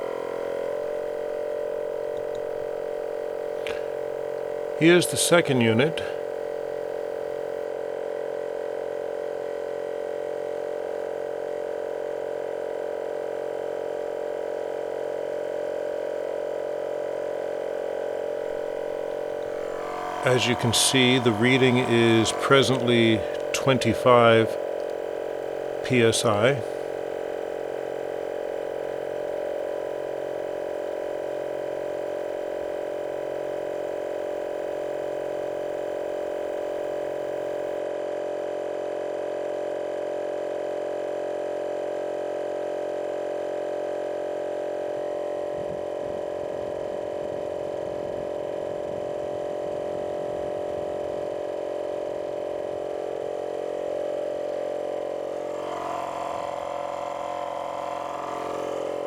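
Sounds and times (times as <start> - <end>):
air compressor humming: 0.0 - 7.8, 17.4 - 37.8, 55.3 - 59.0.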